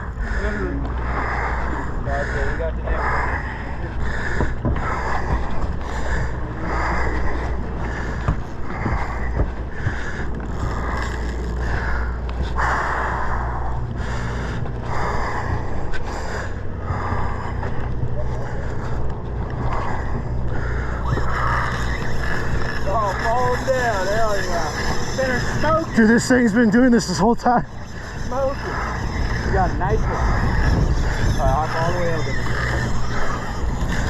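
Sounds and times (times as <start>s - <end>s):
man breathing hard: 0.0s - 22.7s
boat engine drone: 0.0s - 34.0s.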